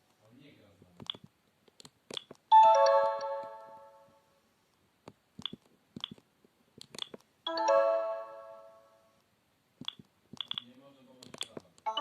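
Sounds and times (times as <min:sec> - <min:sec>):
phone chiming tone: 0:02.5 - 0:04.0, 0:07.5 - 0:08.9.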